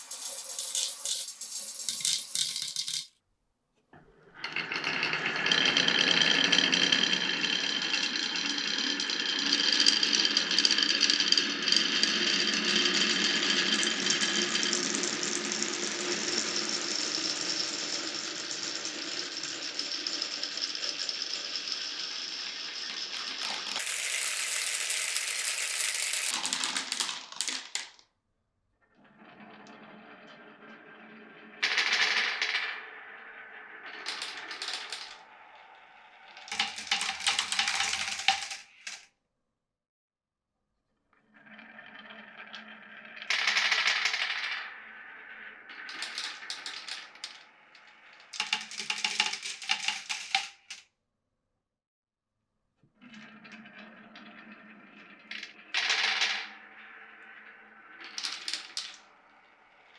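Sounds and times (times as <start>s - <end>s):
marbles rolling and clattering: 0.0s - 3.2s, 4.2s - 28.1s, 29.0s - 39.0s, 41.2s - 50.9s, 53.0s - 59.9s.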